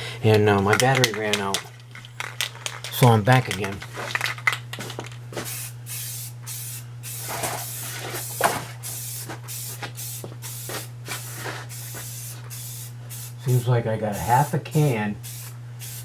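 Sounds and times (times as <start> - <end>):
aerosol spray can spraying: 5.4 - 13.5, 14.2 - 16.0.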